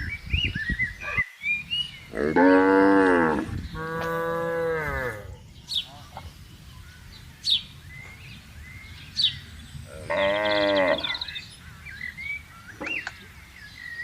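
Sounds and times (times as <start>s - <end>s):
cow mooing: 2.1s - 5.3s, 9.9s - 11.2s
bird chirps: 5.3s - 14.0s.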